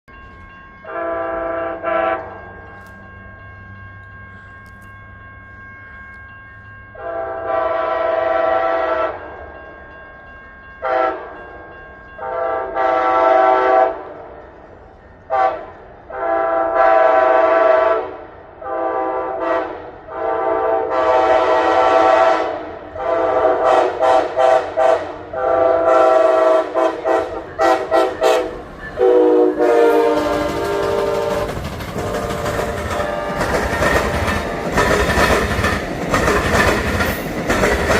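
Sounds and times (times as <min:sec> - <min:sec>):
train wheels rumbling on rails: 0:00.1 - 0:37.9
locomotive air horn blasts: 0:00.8 - 0:02.3, 0:07.0 - 0:09.2, 0:10.8 - 0:11.3, 0:12.2 - 0:14.1, 0:15.3 - 0:33.7.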